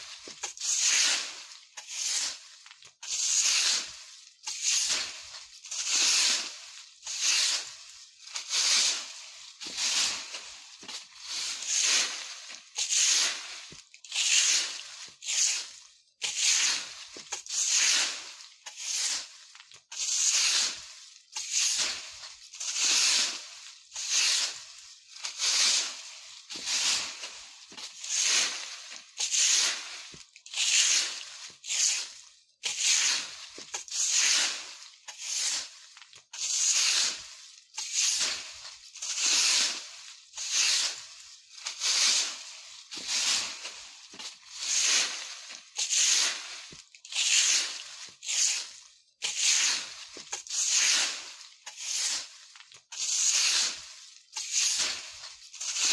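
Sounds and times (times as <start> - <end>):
broom sweeping dry leaves: 0.0 - 55.9.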